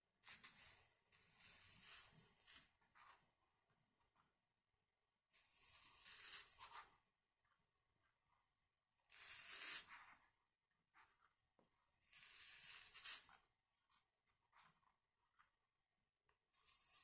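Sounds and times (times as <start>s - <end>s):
soldering iron scraping: 0.2s - 3.2s, 5.4s - 6.9s, 9.1s - 10.2s, 12.1s - 13.4s, 16.6s - 17.0s.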